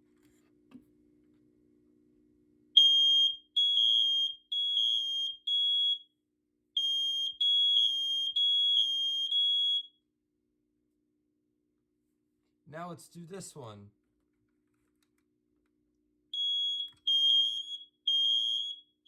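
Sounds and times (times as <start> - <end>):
smoke alarms beeping: 2.8 - 6.1, 6.8 - 9.9, 16.3 - 19.0.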